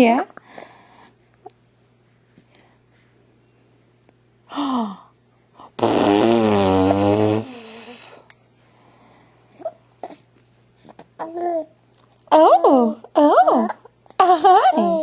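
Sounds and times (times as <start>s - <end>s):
buzzing raspberry through lips: 5.7s - 8.2s.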